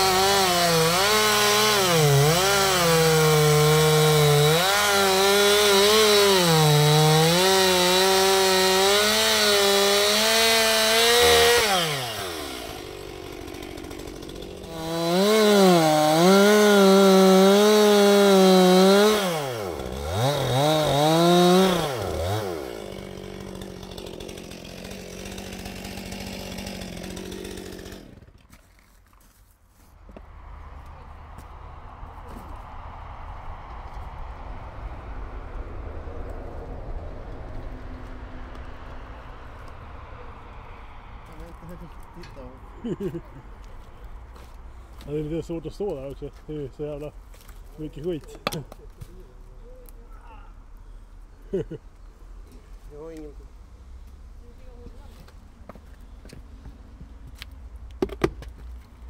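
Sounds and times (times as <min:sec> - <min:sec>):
chainsaw revving: 0:00.0 - 0:28.4.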